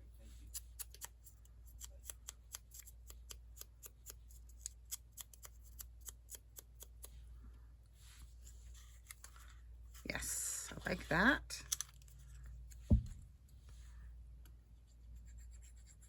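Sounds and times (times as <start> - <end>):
scissors snipping paper: 0.5 - 7.1.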